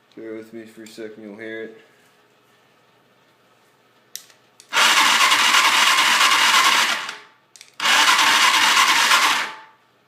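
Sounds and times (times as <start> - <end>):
starter motor cranking engine: 4.7 - 7.2, 7.8 - 9.6.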